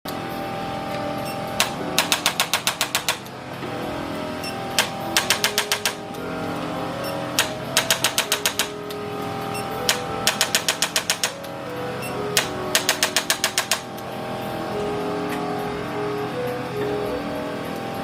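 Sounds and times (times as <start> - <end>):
background music: 0.1 - 18.0
adjuster gun rapid clicks: 1.6 - 3.3, 4.8 - 6.0, 7.4 - 8.7, 9.9 - 11.4, 12.4 - 13.9.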